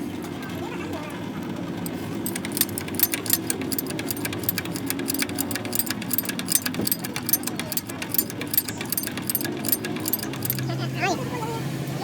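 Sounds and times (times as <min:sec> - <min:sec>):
metallic clicking and clinking: 0:01.8 - 0:10.8.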